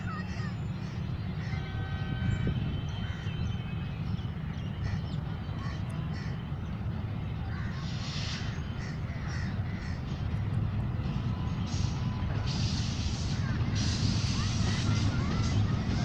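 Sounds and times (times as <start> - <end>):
steady low rumble: 0.0 - 16.0
crows cawing: 5.6 - 6.4, 7.5 - 10.2
brief hiss: 11.7 - 14.9.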